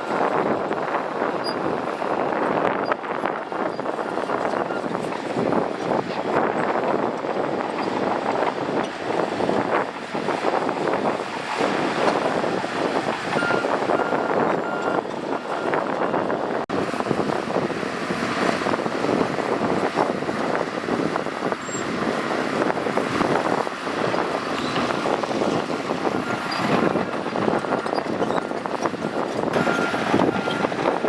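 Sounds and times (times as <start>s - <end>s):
bulldozer diesel engine running: 0.0s - 31.0s
reversing beeps: 13.3s - 15.8s, 29.5s - 30.7s.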